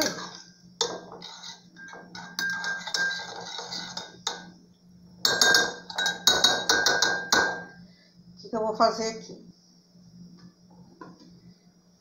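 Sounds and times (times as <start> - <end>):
spoon scraping and clinking bowl: 0.0 - 4.5, 5.2 - 7.8.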